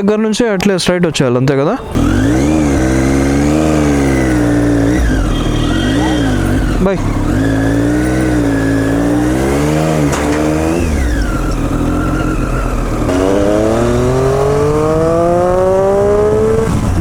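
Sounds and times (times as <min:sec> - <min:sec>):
vehicle engine accelerating: 0:01.8 - 0:17.0.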